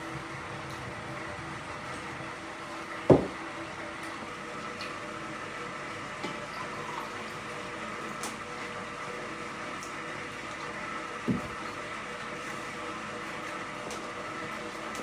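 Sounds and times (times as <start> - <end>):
steady background hum: 0.0 - 8.3
loud ringing knock: 3.1 - 3.4.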